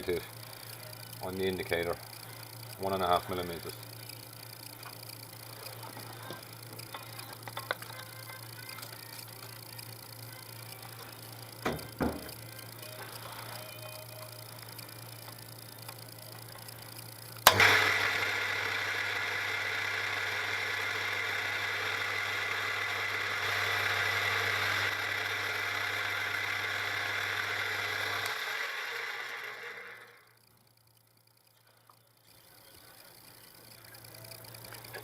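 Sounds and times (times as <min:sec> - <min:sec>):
milling machine motor humming: 0:00.0 - 0:35.0.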